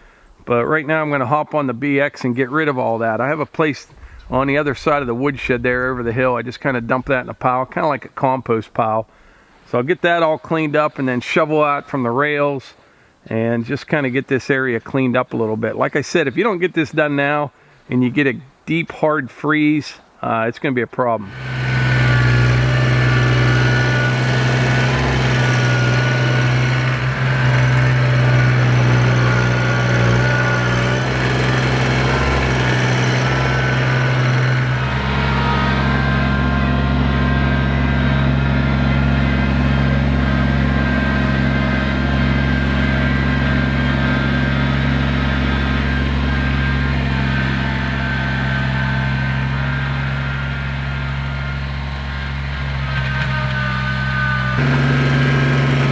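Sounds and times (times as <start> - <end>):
deeper engine rumble: 3.8 - 7.5, 21.2 - 48.0, 54.5 - 55.9
tractor diesel engine running: 21.2 - 53.8, 54.4 - 55.9.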